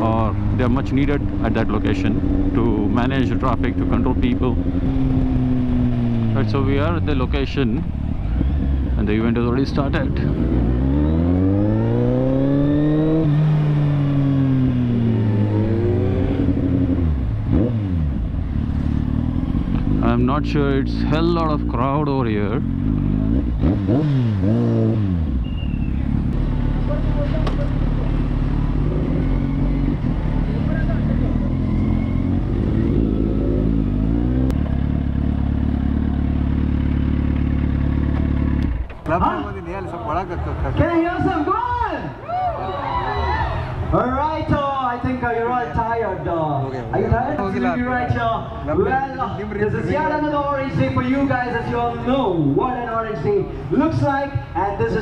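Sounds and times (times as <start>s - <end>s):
motorcycle engine revving: 0.0s - 40.7s.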